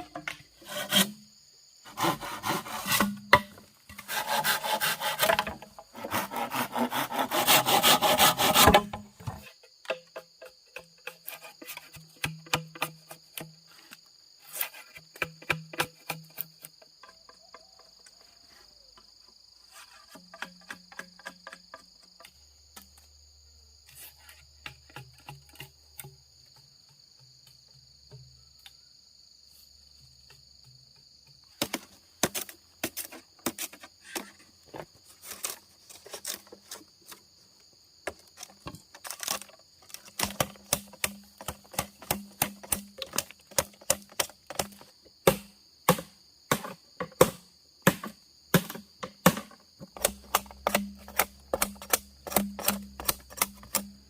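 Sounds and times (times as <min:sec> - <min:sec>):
high insect drone: 0:00.0 - 0:54.0
sharp irregular knocks: 0:40.2 - 0:54.0.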